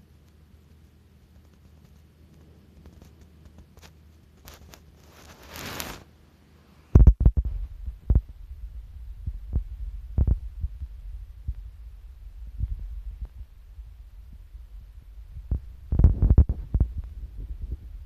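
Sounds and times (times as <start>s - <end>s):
short rustling hiss: 4.4s - 6.1s
heavy thumps: 7.0s - 17.8s
steady low rumble: 7.0s - 18.0s.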